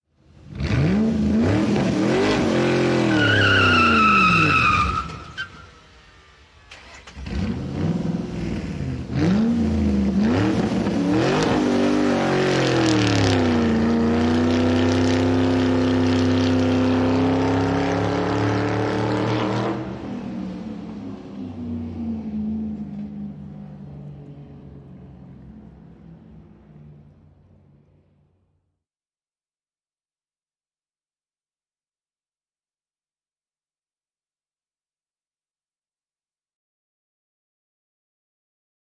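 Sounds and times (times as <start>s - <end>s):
car engine accelerating: 0.3s - 28.6s
tyre squeal: 3.0s - 5.9s.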